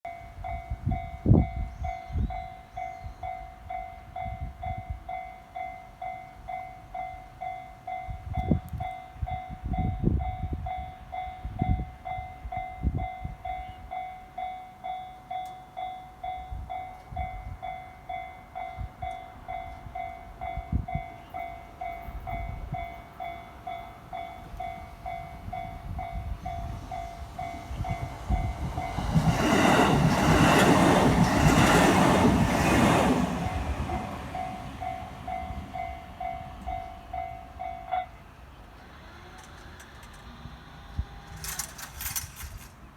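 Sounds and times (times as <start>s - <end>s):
level crossing warning bell: 0.1s - 38.3s
train rushing past: 21.7s - 42.7s.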